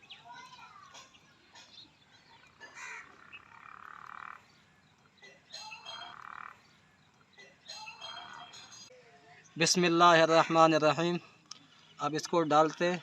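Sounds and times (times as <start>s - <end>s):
frog croaking: 2.8s - 4.6s, 5.6s - 6.7s.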